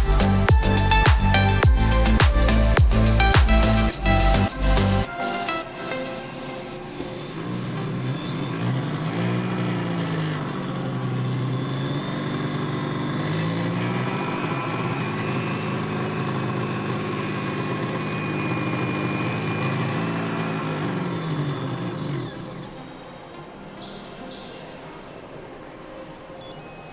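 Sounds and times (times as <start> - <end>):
blender motor running: 6.6 - 22.8.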